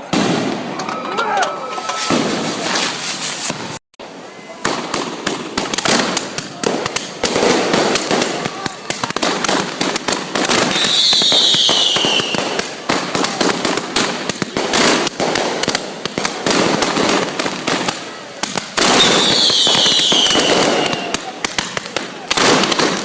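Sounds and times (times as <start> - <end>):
fireworks crackling: 0.0 - 23.0
falling firework whistle: 0.1 - 4.8, 10.6 - 12.6, 18.8 - 21.2.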